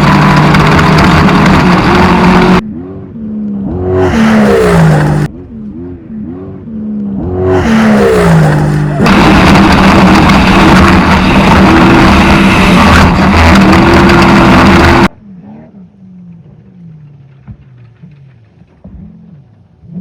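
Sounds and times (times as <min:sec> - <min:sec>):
quieter engine: 0:00.0 - 0:20.0
race vehicle engine running hard: 0:00.0 - 0:20.0
rushing wind and terrain noise: 0:07.2 - 0:15.1.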